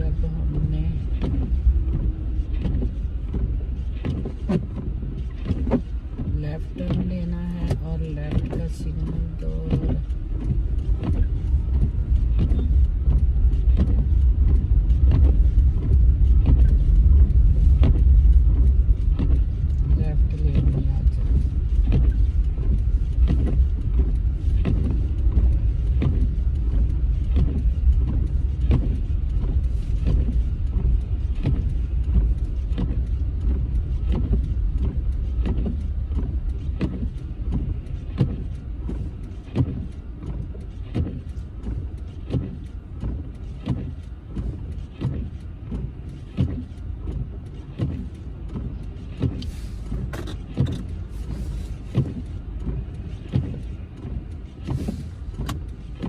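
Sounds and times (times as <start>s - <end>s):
engine and road rumble: 0.0s - 56.0s
turn signal ticking: 0.0s - 56.0s.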